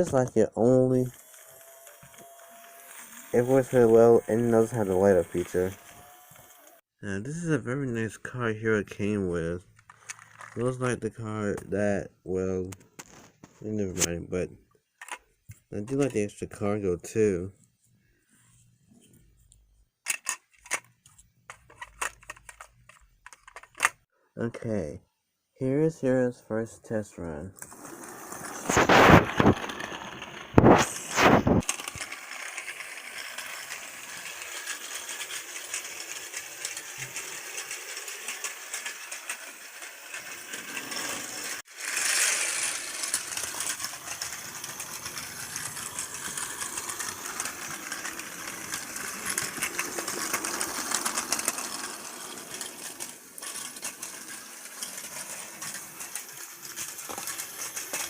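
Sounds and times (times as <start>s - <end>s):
plastic wheels clattering: 0.0s - 6.8s, 9.8s - 11.0s, 21.5s - 24.0s, 27.6s - 58.0s
toy train motor whirring: 0.6s - 6.8s, 9.8s - 10.7s, 27.6s - 58.0s.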